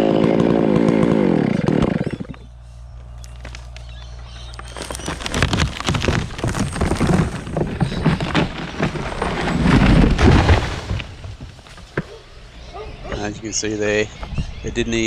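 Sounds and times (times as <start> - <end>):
tree trunk snapping and crashing: 3.2 - 12.2.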